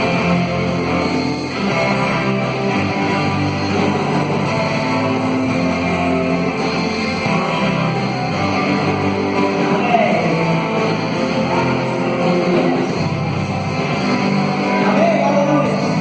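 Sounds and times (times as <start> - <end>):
live rock band with electric guitar: 0.0 - 16.0.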